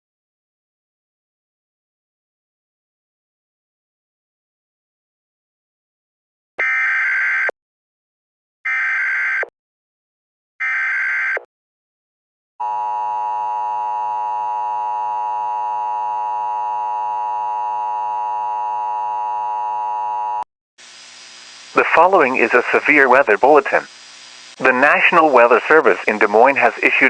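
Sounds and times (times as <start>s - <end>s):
steady loud attention tone: 21.7s - 23.9s, 24.6s - 27.0s.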